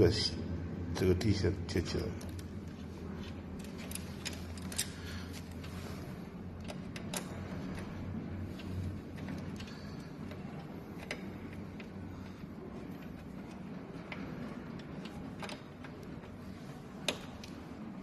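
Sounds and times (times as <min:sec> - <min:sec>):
steady low hum: 0:00.0 - 0:18.0
hands clicking and tapping on wiring: 0:06.6 - 0:17.6.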